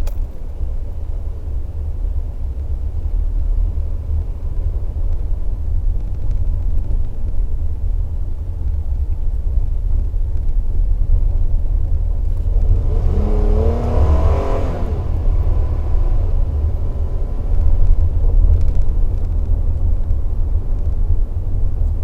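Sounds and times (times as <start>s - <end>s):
road and wind rumble: 0.0s - 22.0s
engine accelerating: 11.9s - 20.7s.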